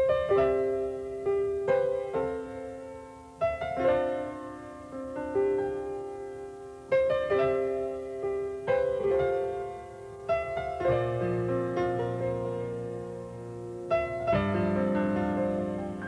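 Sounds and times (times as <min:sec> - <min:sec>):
piano playing slow chords: 0:00.0 - 0:16.0.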